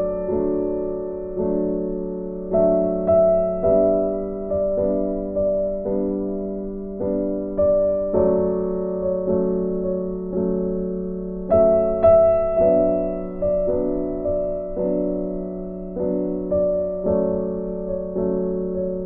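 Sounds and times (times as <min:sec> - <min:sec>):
electric piano chords: 0:00.0 - 0:19.0.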